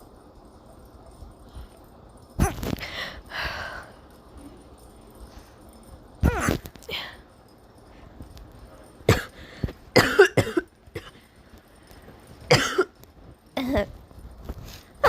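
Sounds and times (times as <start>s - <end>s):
person hiccuping: 6.2s - 6.8s.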